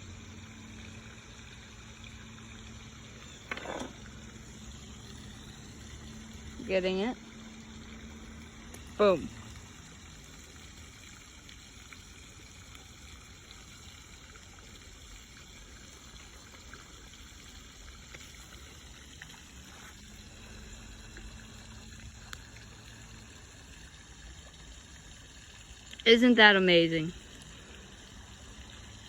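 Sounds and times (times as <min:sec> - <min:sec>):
water trickling: 0:00.0 - 0:29.0
small ticks: 0:19.2 - 0:22.8.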